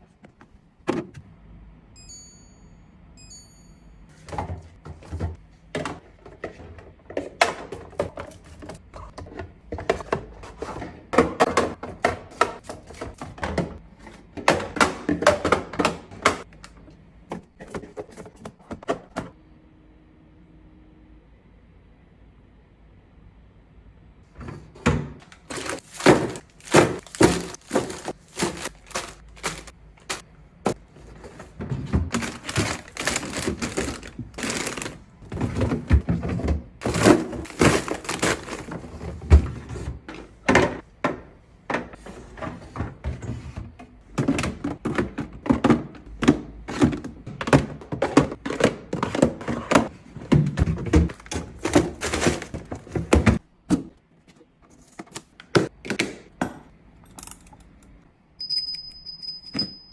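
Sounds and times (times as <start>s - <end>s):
groceries knocking on fridge shelves: 4.2s - 19.4s, 24.3s - 54.0s.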